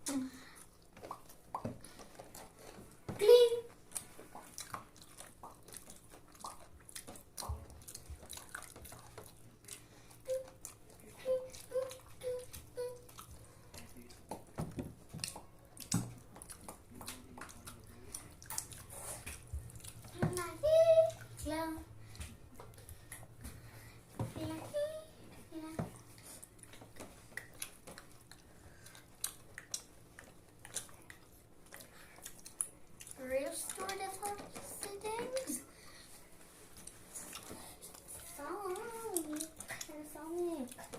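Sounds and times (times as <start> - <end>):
chewing and wet mouth smacks: 0.4 - 3.0, 3.8 - 20.1, 26.0 - 34.0, 36.7 - 40.1.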